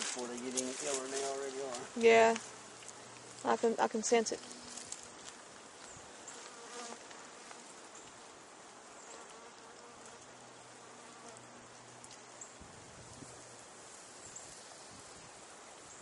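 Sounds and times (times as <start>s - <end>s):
bees buzzing: 0.0s - 8.2s.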